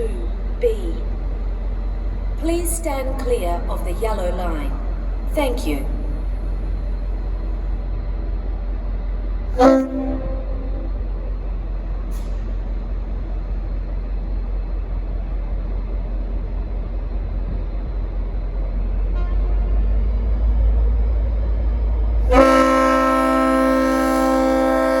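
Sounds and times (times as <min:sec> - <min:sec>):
diesel locomotive rumbling: 0:00.0 - 0:25.0
locomotive air horn chord: 0:09.6 - 0:11.3, 0:19.2 - 0:19.7, 0:22.3 - 0:25.0.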